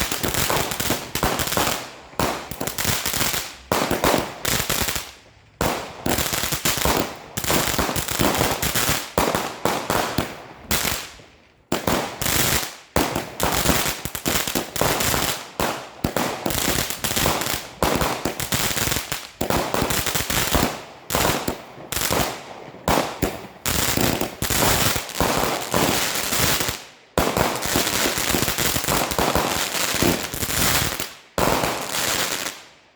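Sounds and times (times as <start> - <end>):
fireworks shots and crackling bangs: 0.0 - 32.9.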